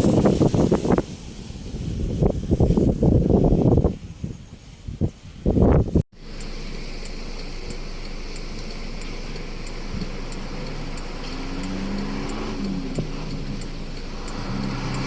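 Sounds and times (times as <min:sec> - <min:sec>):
rain hissing: 0:00.0 - 0:05.4, 0:06.2 - 0:15.0
low engine hum: 0:05.8 - 0:15.0
faint high ticks: 0:06.3 - 0:15.0.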